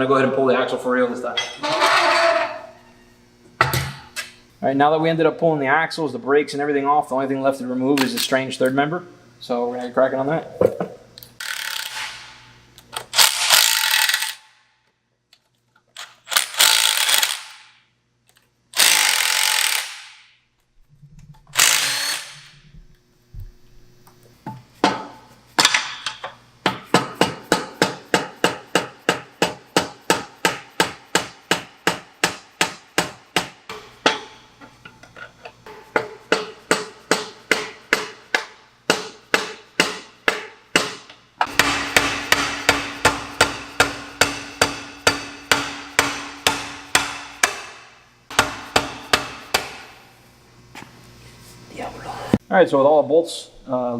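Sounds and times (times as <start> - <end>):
power tool bursts: 13.1 - 14.4, 16.3 - 17.7, 18.8 - 20.2, 21.6 - 22.6.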